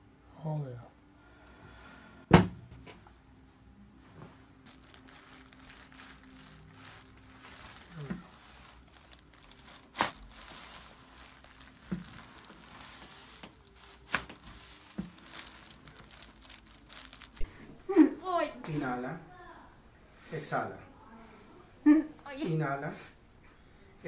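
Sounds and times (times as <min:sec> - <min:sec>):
paper crinkling and rustling: 0:04.6 - 0:17.5.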